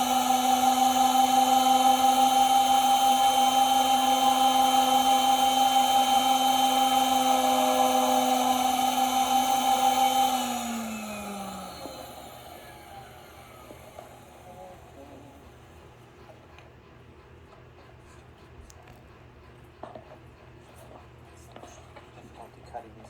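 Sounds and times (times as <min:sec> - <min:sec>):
key cutting machine motor whine: 0:00.0 - 0:15.5.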